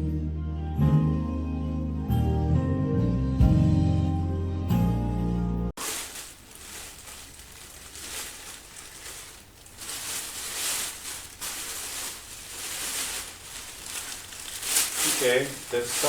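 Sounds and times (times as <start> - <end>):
packaging rustling: 5.8 - 16.0.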